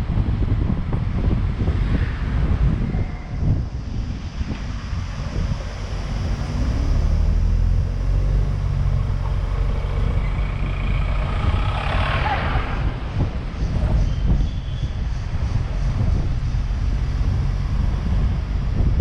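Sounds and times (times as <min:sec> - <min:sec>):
wind and road noise: 0:00.0 - 0:19.0
loud rushing noise: 0:01.6 - 0:14.1
vehicle engine running: 0:03.5 - 0:14.4.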